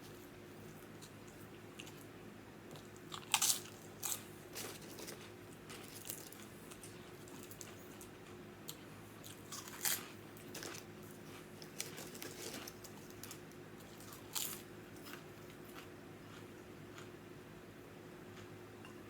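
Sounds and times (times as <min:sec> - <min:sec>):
person chewing and biting food: 0:02.7 - 0:17.1.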